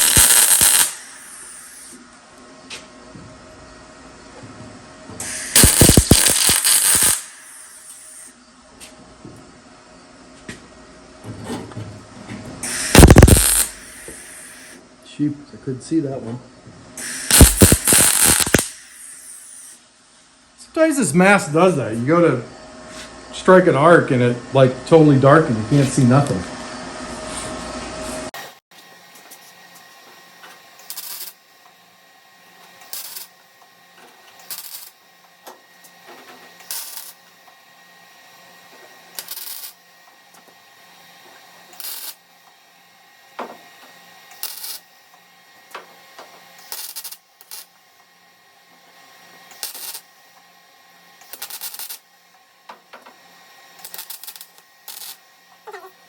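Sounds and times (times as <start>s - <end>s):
welding arc crackling: 0.0s - 2.0s, 5.2s - 8.3s, 12.7s - 14.8s, 17.0s - 19.8s, 30.7s - 31.6s, 32.8s - 33.6s, 34.2s - 35.0s, 36.6s - 37.3s, 39.0s - 39.8s, 41.7s - 42.3s, 44.3s - 44.9s, 46.5s - 47.8s, 49.5s - 50.1s, 51.2s - 52.1s, 53.7s - 55.9s.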